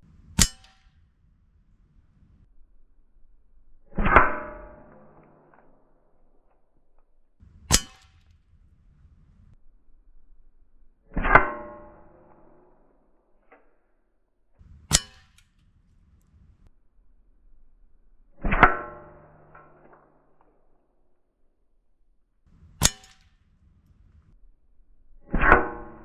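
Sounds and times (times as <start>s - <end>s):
bb gun shot metallic clang: 0.3s - 1.0s, 7.6s - 8.4s, 14.8s - 15.7s, 22.8s - 24.1s
sharp click: 22.8s - 24.4s.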